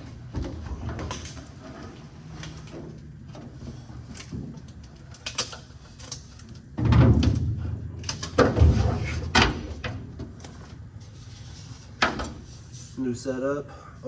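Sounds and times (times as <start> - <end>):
heavy thuds and clatter: 6.7 - 10.8.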